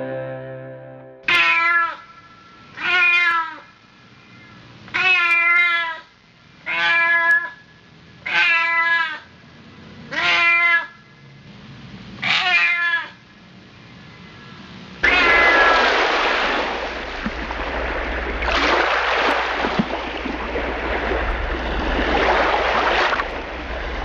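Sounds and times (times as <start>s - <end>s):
music: 0.0s - 1.3s
cat meowing: 1.3s - 2.1s, 2.8s - 3.7s, 5.0s - 6.1s, 6.7s - 7.6s, 8.2s - 9.2s, 10.1s - 11.0s, 12.2s - 13.2s, 15.0s - 15.6s.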